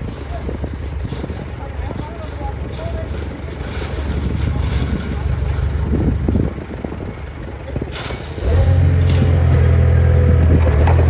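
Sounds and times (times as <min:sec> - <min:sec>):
diesel engine revving: 0:02.6 - 0:11.0
metal clanks: 0:07.9 - 0:11.0.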